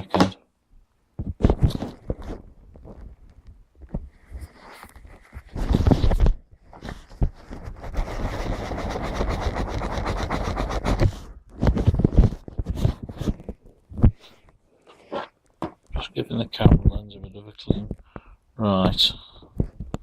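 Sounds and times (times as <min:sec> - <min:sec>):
cloth rubbing camera lens: 0:01.2 - 0:03.2, 0:03.8 - 0:16.0
camera handling bumps and knocks: 0:15.5 - 0:15.9.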